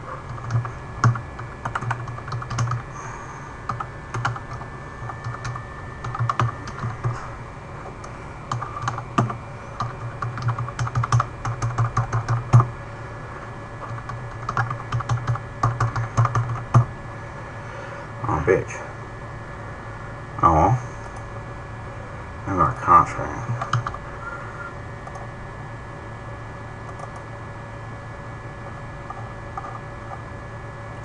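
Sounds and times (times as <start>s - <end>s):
keyboard typing clicks: 0.3s - 2.9s, 3.7s - 7.0s, 8.5s - 12.7s, 13.8s - 16.9s, 23.6s - 24.0s, 26.9s - 27.2s, 29.1s - 30.2s.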